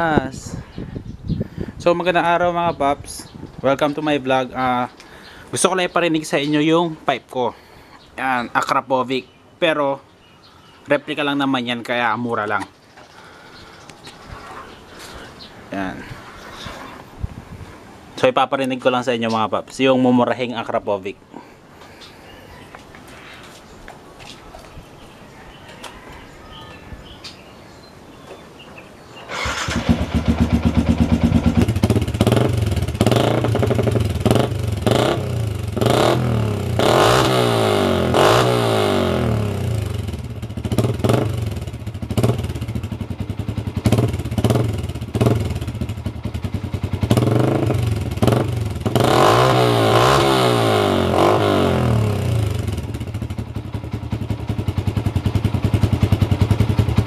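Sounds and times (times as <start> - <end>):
motorcycle engine revving: 29.3 - 57.0.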